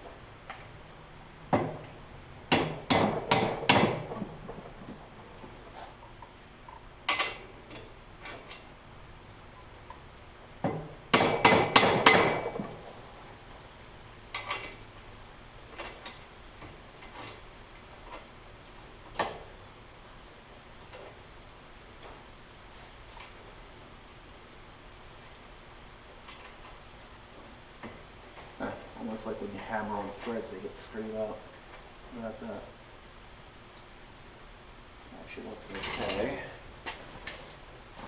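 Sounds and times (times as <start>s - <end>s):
hammer striking metal bolt: 10.7s - 12.6s.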